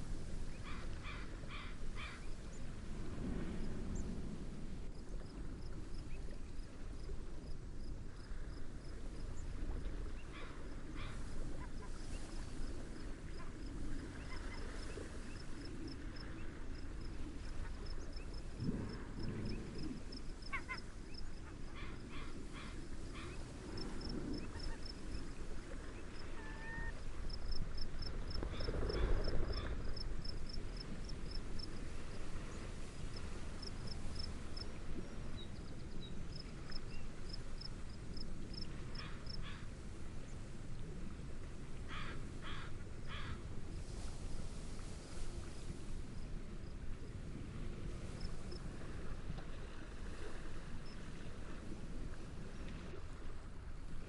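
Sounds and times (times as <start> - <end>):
gentle waves: 0.0 - 54.0
wind: 0.0 - 54.0
cricket chirping: 14.2 - 25.4, 26.2 - 31.9, 33.1 - 39.6.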